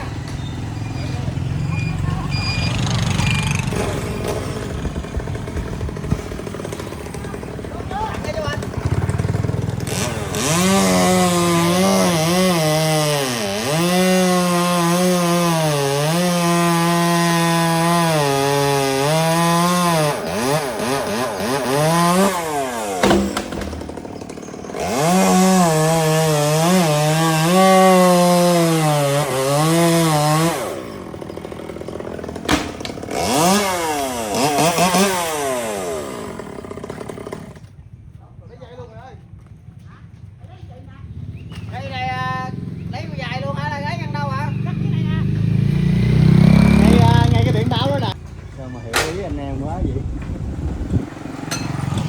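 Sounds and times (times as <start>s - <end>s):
chainsaw cutting wood: 2.8s - 37.8s, 51.2s - 52.0s.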